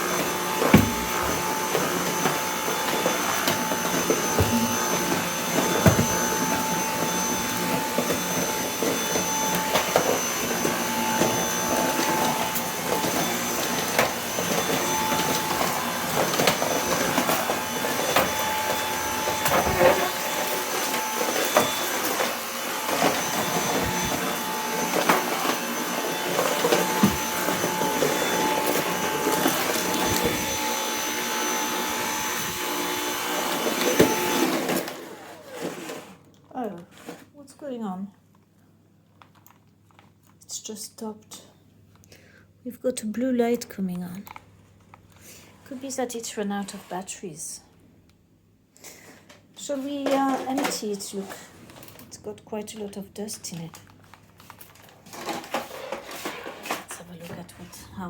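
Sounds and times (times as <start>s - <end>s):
stick vacuum running with whine: 0.0s - 36.0s.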